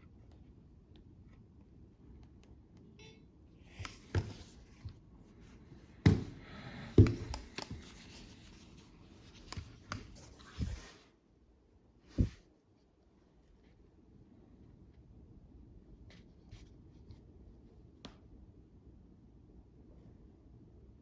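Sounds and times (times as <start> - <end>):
hands rustling objects: 3.8 - 11.0.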